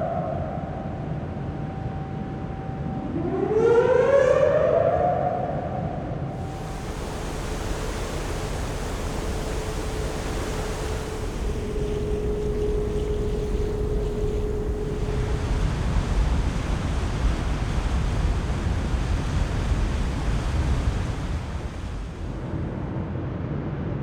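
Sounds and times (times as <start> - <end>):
steady engine whine: 6.3 - 22.9
exhaust fan whine: 6.3 - 23.5
idling engines hum: 6.4 - 22.7
bow wash rushing along hull: 6.4 - 22.8.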